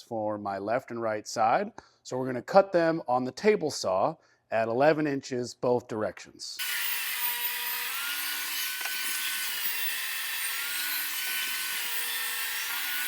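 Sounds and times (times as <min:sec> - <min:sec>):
table saw cutting wood: 0:06.6 - 0:13.0.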